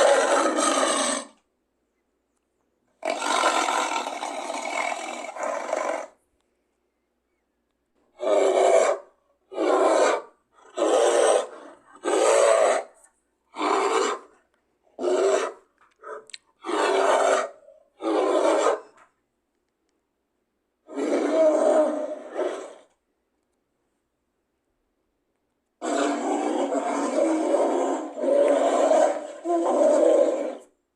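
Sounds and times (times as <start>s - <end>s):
harsh rasping roar calls: 0.0s - 1.4s, 3.0s - 6.2s, 8.2s - 14.4s, 15.0s - 15.7s, 16.6s - 19.0s, 20.9s - 22.9s, 25.8s - 30.8s.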